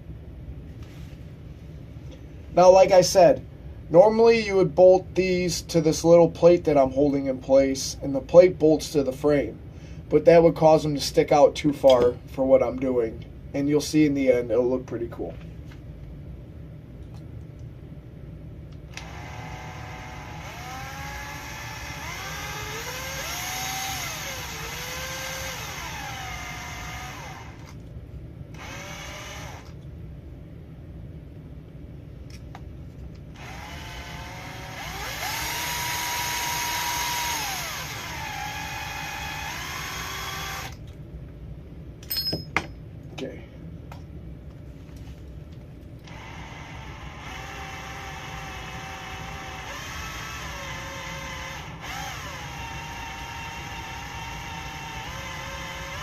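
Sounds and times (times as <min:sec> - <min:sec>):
power drill whining: 0:18.9 - 0:27.8, 0:28.6 - 0:29.8, 0:33.4 - 0:40.8, 0:46.0 - 0:56.0.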